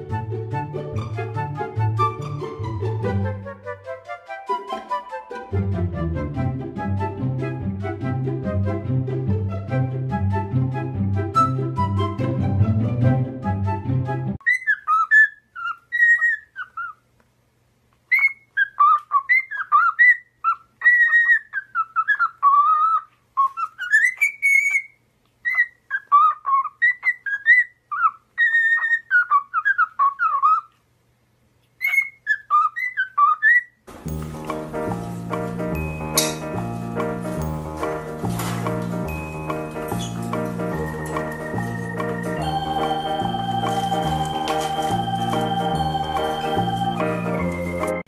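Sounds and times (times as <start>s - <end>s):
high whistled notes: 33.9s - 48.0s.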